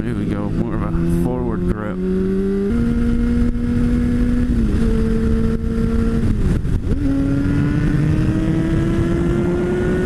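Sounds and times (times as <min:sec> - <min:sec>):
motorcycle engine revving: 0:00.0 - 0:10.0
wind rushing: 0:02.2 - 0:10.0.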